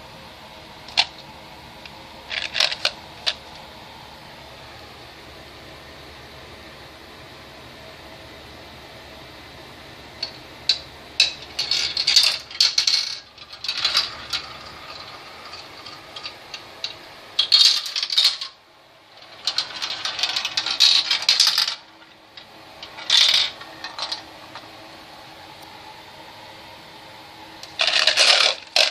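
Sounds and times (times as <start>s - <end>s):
marbles rattling down marble run: 11.2s - 18.6s, 19.2s - 21.8s, 22.8s - 24.2s, 27.8s - 28.9s.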